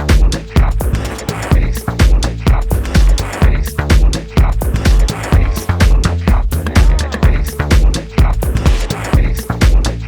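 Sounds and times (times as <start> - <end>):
bass line: 0.0 - 10.0
electronic dance music: 0.0 - 10.0
kick drum: 0.0 - 10.0.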